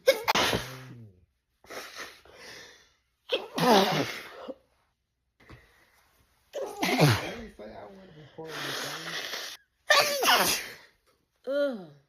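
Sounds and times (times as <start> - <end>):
woman sneezing: 3.3 - 4.6, 9.9 - 10.9.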